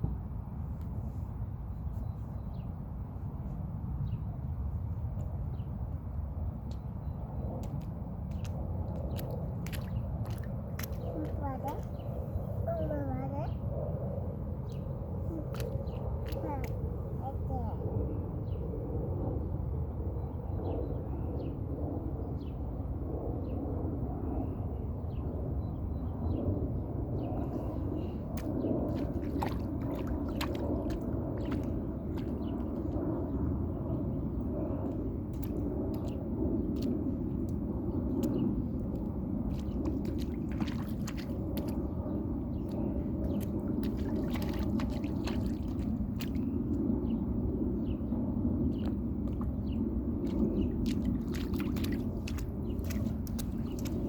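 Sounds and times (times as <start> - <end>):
steady low rumble: 0.0 - 54.0
water splashing in puddle: 7.6 - 12.1, 15.3 - 17.5, 28.1 - 33.0, 34.8 - 42.0, 42.6 - 46.8, 48.8 - 54.0.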